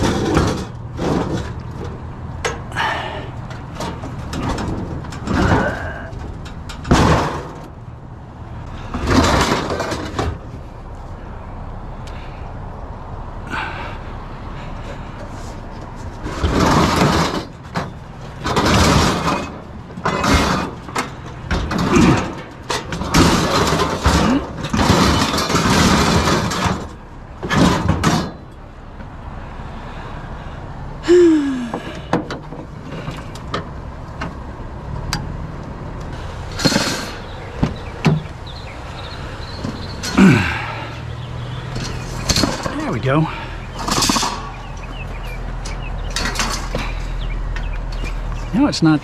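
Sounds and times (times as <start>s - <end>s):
scrap scraping and clattering: 0.0s - 7.8s, 8.6s - 11.3s, 14.6s - 28.6s, 36.1s - 48.5s.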